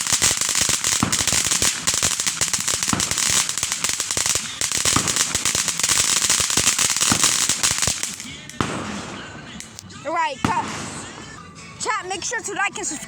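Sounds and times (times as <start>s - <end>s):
firecrackers crackling: 0.0s - 13.0s.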